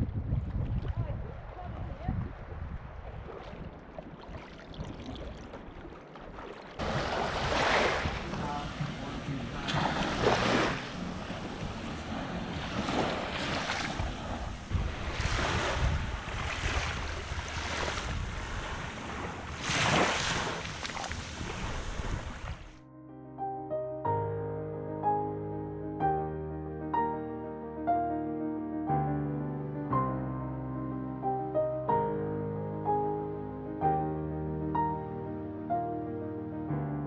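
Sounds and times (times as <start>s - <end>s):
wind rushing on microphone: 0.0s - 5.3s, 6.8s - 22.8s
sea waves washing against boat: 0.8s - 22.8s.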